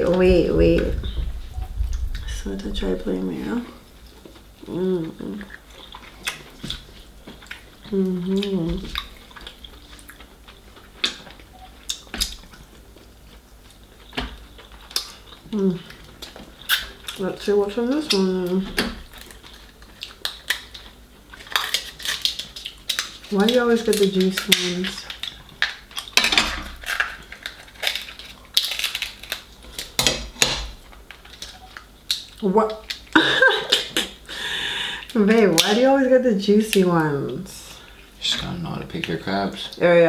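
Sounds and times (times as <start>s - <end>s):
soft wet chewing: 3.8s - 17.2s, 17.8s - 26.2s
crab shell cracking: 17.9s - 33.1s.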